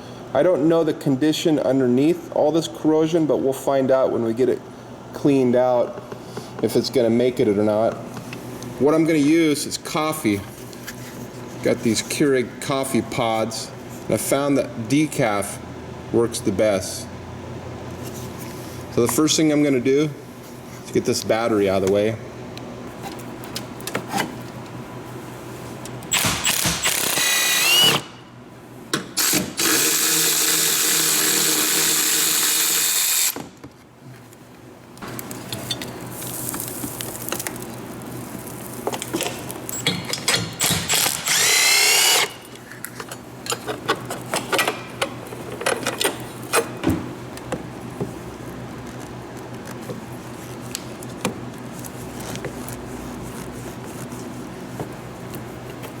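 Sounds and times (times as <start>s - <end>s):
power driver spinning fasteners: 26.1s - 28.1s, 39.7s - 42.6s.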